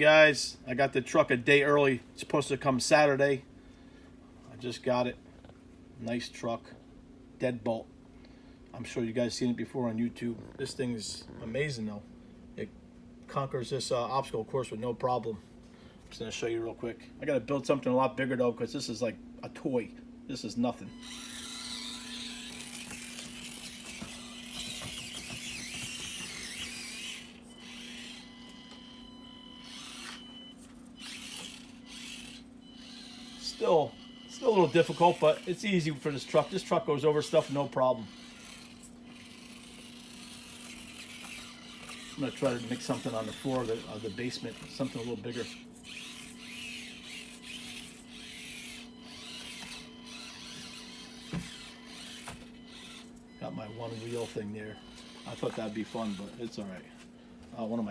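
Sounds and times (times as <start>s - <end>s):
toy car motor whirring: 20.9s - 56.8s.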